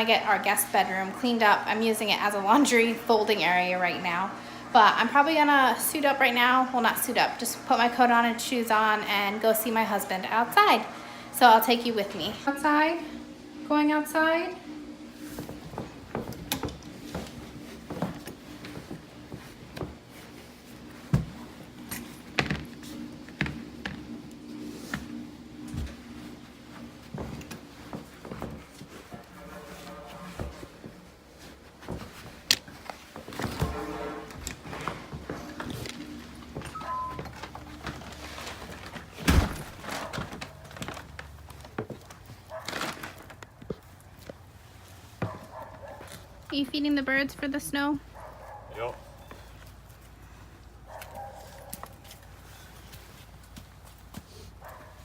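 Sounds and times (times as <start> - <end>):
steady low hum: 0.0 - 42.4
short high tones: 36.7 - 37.3.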